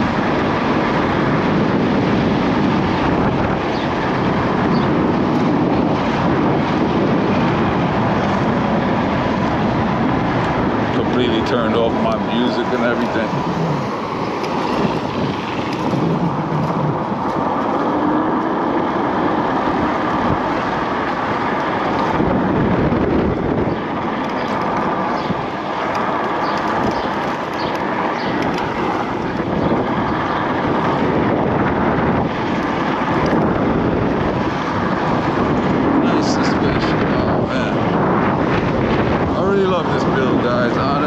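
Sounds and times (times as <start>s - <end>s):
road and tyre noise: 0.0s - 41.0s
wind rushing over microphone: 0.0s - 41.0s.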